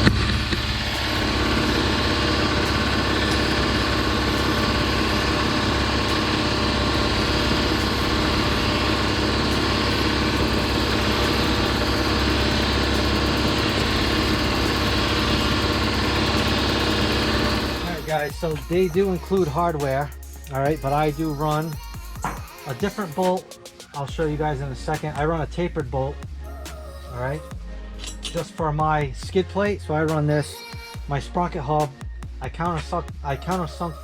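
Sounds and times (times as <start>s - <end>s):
small engine running steadily: 0.0s - 18.1s.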